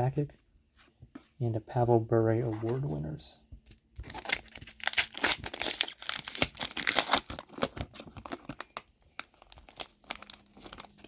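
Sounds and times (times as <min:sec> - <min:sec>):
wrapper tearing and crinkling: 0:04.1 - 0:11.0.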